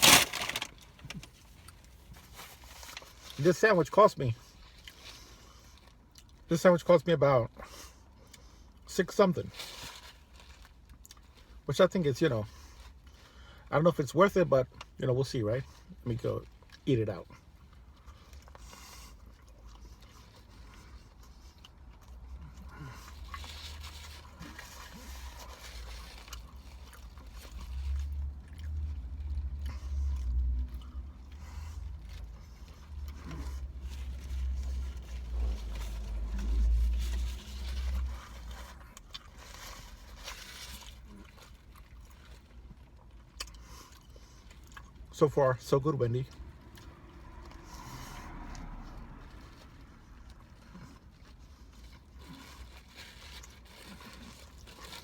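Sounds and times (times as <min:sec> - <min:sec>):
sandwich wrapper rustling: 0:00.0 - 0:07.1, 0:08.6 - 0:13.6, 0:15.7 - 0:45.2, 0:46.0 - 0:55.0
person chewing: 0:10.2 - 0:11.6, 0:17.4 - 0:45.1, 0:46.3 - 0:55.0.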